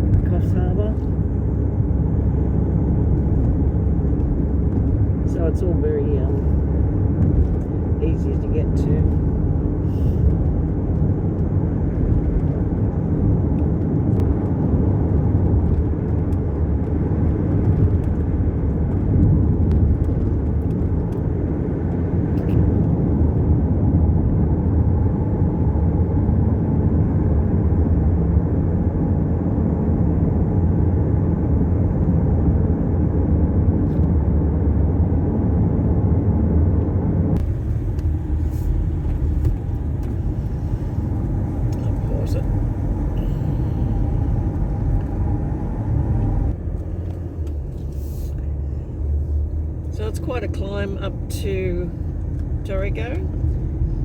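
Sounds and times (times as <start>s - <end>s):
car engine and tyre noise: 0.0s - 54.0s.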